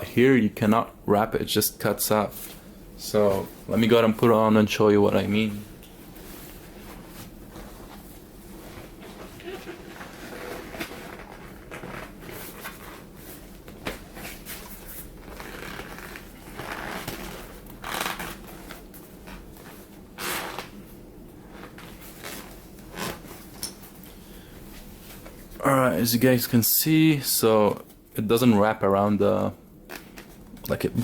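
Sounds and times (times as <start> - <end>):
leather cover rustling: 6.0 - 23.9.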